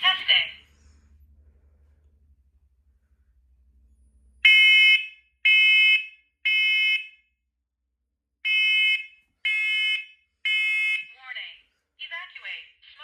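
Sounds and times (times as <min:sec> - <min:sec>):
smoke alarm beeps: 0:04.5 - 0:07.2, 0:08.5 - 0:11.1.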